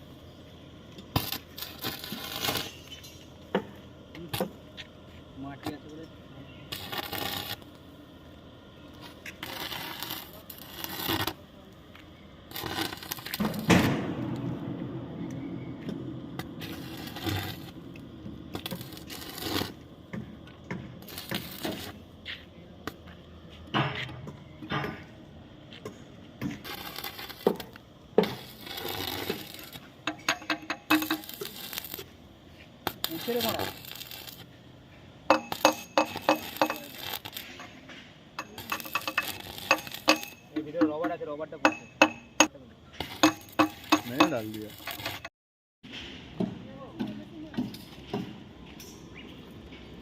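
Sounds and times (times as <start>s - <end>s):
metal scraping: 1.0s - 4.6s, 12.4s - 22.4s, 25.8s - 46.4s.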